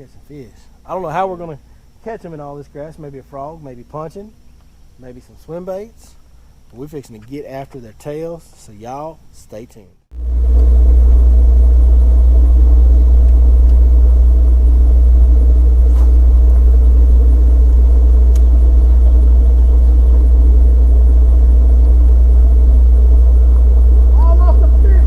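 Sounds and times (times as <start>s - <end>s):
outboard motor rumble: 10.1s - 25.0s.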